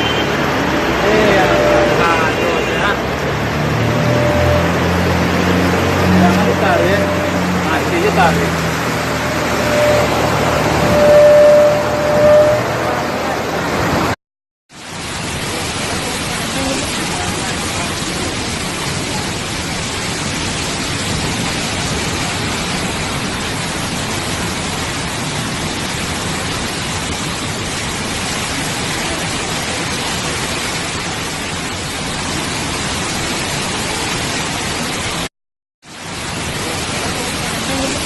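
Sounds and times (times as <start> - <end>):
waterfall rushing: 0.0 - 14.2, 14.8 - 35.3, 35.9 - 38.0.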